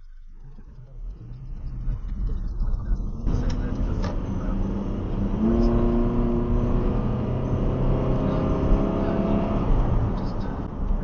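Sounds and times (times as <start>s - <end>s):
car engine hum: 0.0s - 11.0s
road noise: 0.0s - 11.0s.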